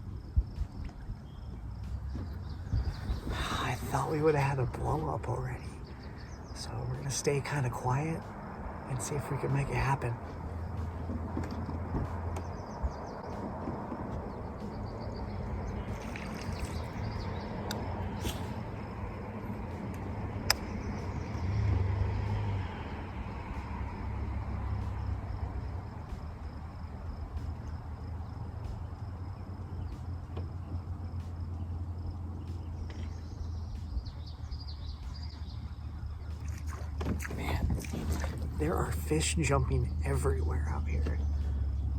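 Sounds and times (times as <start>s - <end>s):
thin high insect tone: 14.6s - 19.9s
faint bird chirps: 14.7s - 18.8s.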